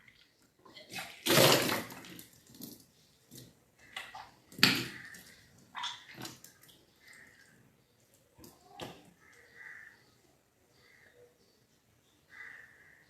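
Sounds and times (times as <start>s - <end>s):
person retching and vomiting water: 0.6s - 6.6s
water splashing: 3.9s - 7.6s.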